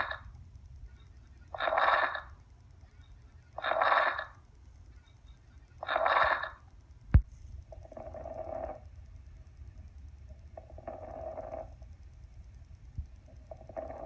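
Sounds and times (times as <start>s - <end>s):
steady low rumble: 6.6s - 14.0s.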